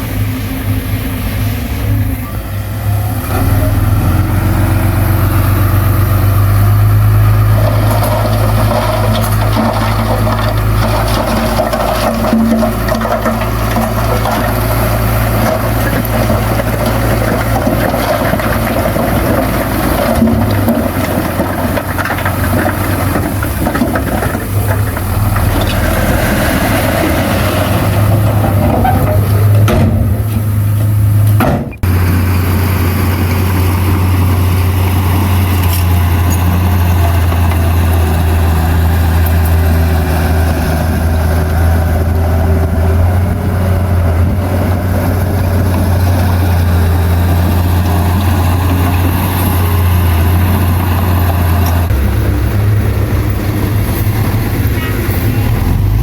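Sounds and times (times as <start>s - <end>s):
heavy diesel engine running: 0.0s - 56.0s.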